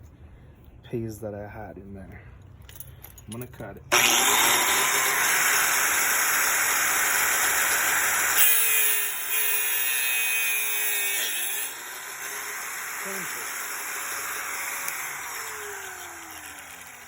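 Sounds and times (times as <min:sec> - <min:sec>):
bench grinder grinding steel: 0:03.9 - 0:17.0
grinder wheel whine: 0:03.9 - 0:17.0.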